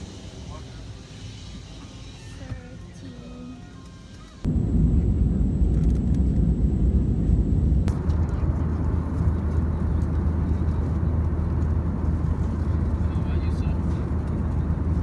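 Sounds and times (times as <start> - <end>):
constant low hum: 0.0 - 15.0
moving vehicle rumble: 3.6 - 15.0.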